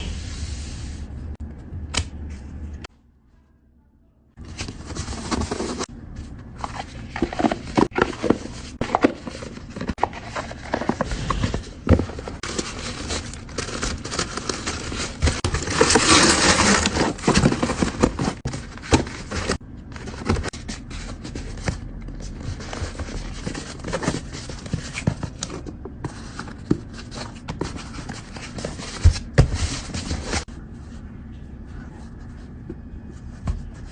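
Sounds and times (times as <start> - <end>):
packaging rustling and crinkling: 6.6 - 30.5.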